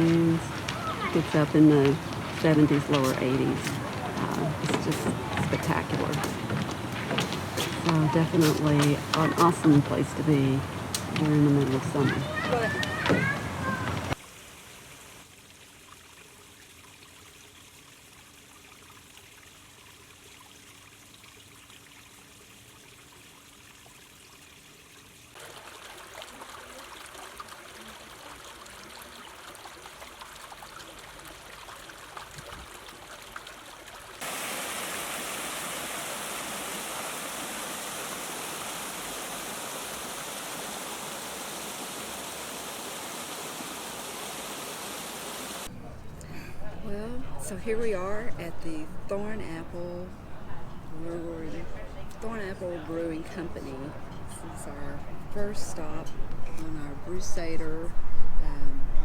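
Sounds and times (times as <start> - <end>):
running water rushing: 0.0 - 45.9.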